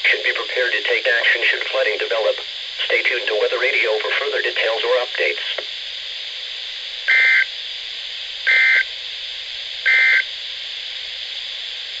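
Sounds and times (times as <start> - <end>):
radio hiss: 0.0 - 12.0
two-tone data bursts: 7.1 - 7.5, 8.5 - 8.8, 9.9 - 10.3.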